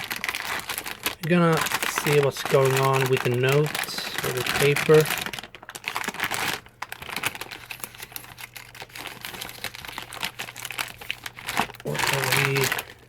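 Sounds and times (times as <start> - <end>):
paper crinkling and rustling: 0.0 - 13.0.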